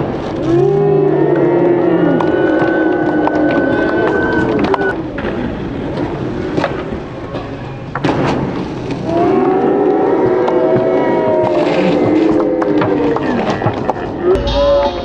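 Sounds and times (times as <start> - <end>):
skateboard rolling on concrete: 0.0 - 14.3
people shouting: 0.4 - 5.0, 9.1 - 15.0
skateboard clacking on ground: 2.2 - 9.0.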